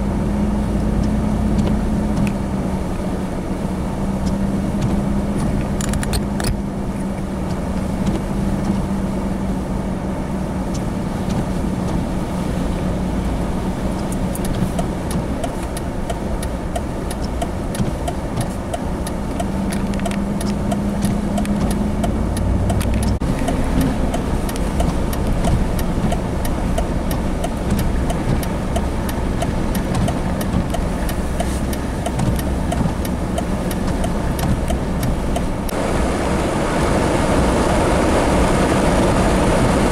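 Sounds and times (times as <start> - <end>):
vehicle low rumble: 0.0 - 39.9
small sharp ticks: 14.0 - 35.5.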